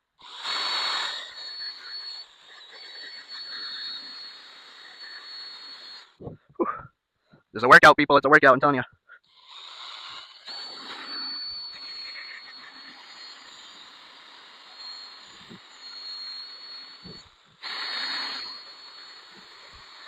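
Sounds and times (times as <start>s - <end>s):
power polisher whining: 0.4s - 6.2s, 9.8s - 20.0s.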